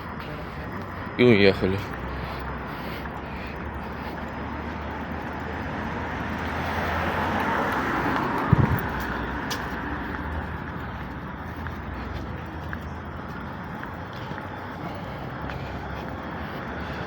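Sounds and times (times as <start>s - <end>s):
vehicle passing: 0.0s - 17.0s
short thump: 8.5s - 9.0s.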